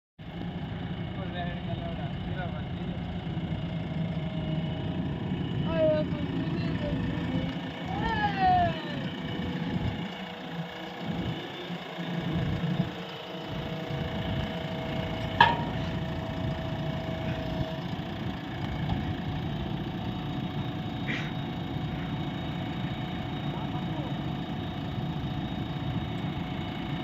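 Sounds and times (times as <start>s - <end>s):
excavator diesel engine running: 0.2s - 27.0s.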